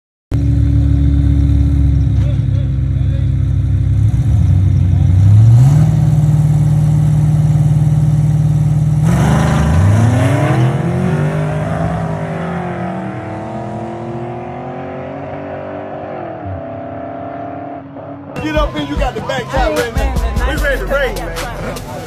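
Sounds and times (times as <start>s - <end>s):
car engine revving: 0.4s - 22.0s.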